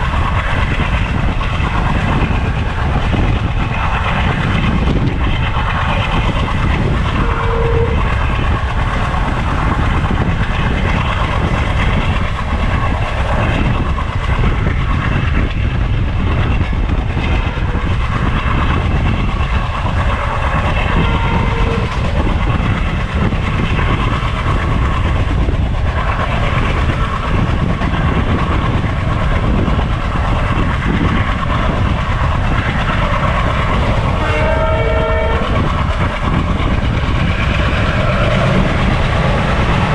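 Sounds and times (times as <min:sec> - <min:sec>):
train wheels on rails: 0:00.0 - 0:39.9
train horn: 0:07.1 - 0:08.1, 0:20.9 - 0:22.0, 0:34.2 - 0:35.7.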